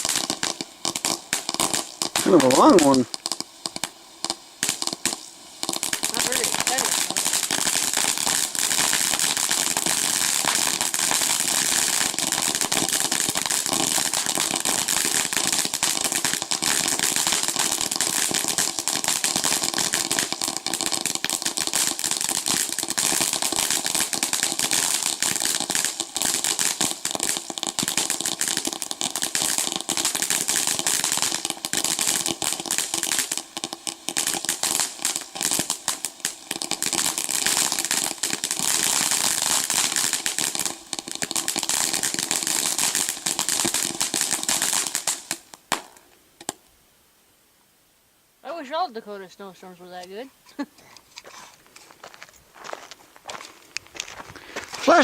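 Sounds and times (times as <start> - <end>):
ground fountain firework crackling: 0.0 - 46.8, 48.4 - 55.0.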